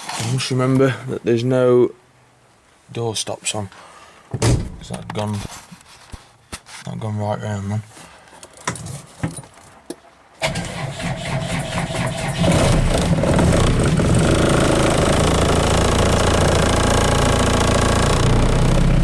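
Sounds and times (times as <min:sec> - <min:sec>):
engine cranking on starter: 0:10.4 - 0:19.0
engine running: 0:10.4 - 0:19.0.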